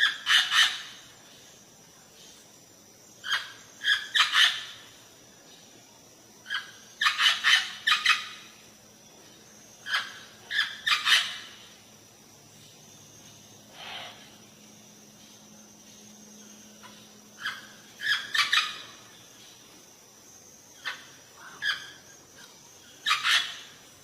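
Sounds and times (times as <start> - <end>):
bird squawking calls: 9.8 - 11.6.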